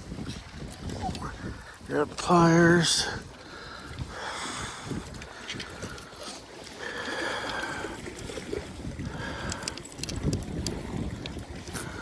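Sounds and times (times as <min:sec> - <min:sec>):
wind buffeting microphone: 0:00.0 - 0:12.0
microphone handling clicks and rustles: 0:09.0 - 0:12.0.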